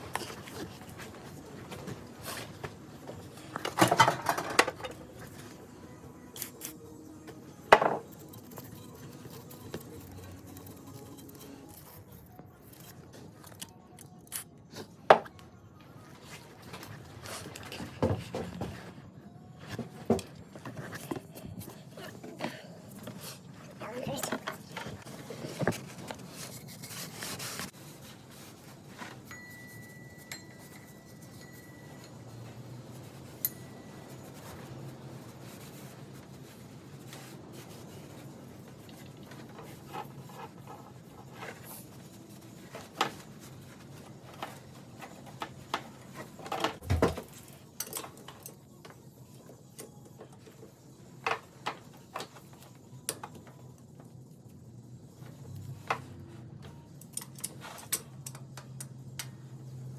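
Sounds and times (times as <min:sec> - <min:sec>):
hand tools and metal parts clinking: 0:00.0 - 0:05.6, 0:19.6 - 0:53.6, 0:56.7 - 0:59.4.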